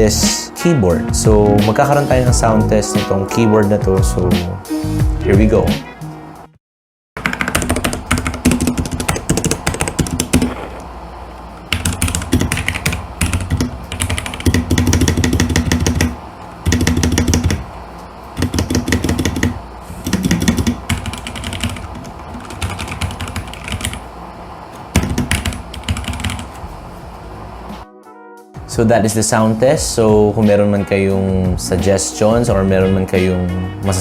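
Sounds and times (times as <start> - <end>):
mechanical keyboard typing: 7.2 - 10.6, 11.7 - 17.6, 18.4 - 24.0, 24.9 - 26.6.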